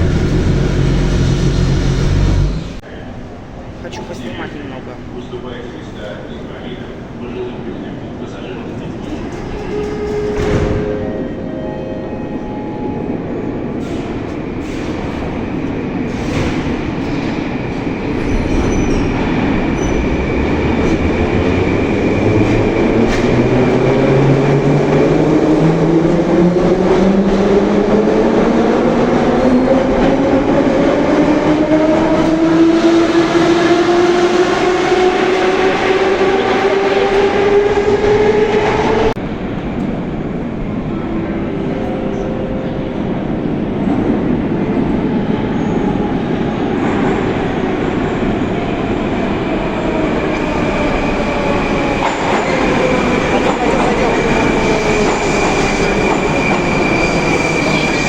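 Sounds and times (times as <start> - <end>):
train traction motor whine: 0.0 - 2.8
wheels rumbling on rails: 0.0 - 2.8.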